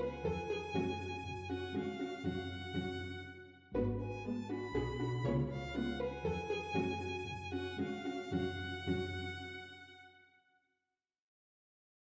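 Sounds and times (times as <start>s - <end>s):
bowed strings music: 0.0s - 10.2s
low bass line: 3.8s - 7.7s.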